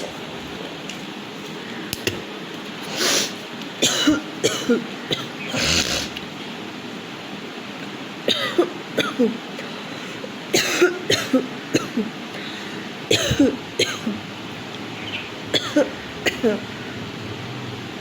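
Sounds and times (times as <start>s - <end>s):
woman coughing: 3.8s - 6.1s, 8.3s - 9.4s, 10.5s - 12.1s, 13.1s - 14.2s, 15.5s - 16.7s
woman clearing throat: 3.8s - 6.2s, 10.6s - 12.1s, 13.1s - 14.2s, 15.5s - 16.7s.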